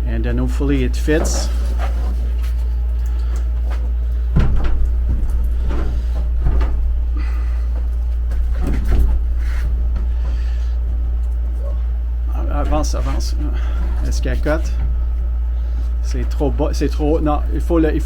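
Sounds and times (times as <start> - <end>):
steady low rumble: 2.3 - 18.0
knocks and bumps on metal: 4.3 - 7.2.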